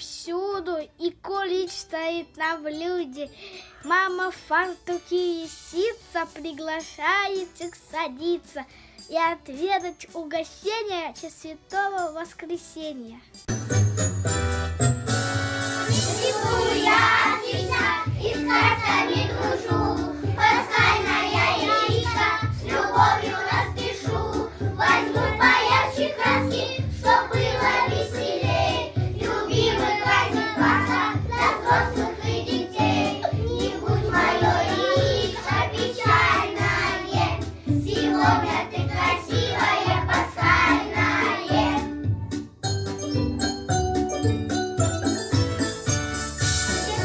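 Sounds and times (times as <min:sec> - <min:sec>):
backing track with steady beat: 0:13.5 - 0:47.0
children singing: 0:15.9 - 0:41.9.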